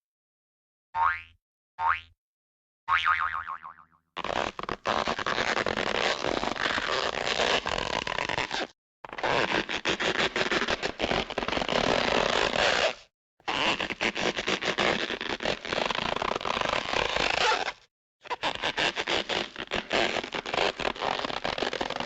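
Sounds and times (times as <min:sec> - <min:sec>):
scratchy crackling cartoon effect: 0:18.4 - 0:22.0.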